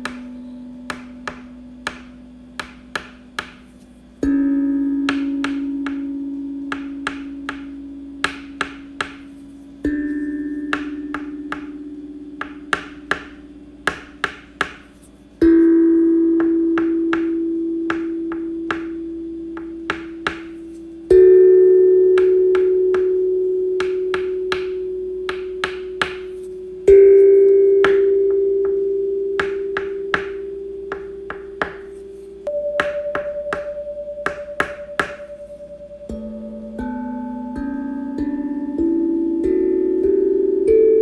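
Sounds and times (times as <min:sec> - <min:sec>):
bell-like chime tones: 0:32.5 - 0:38.0.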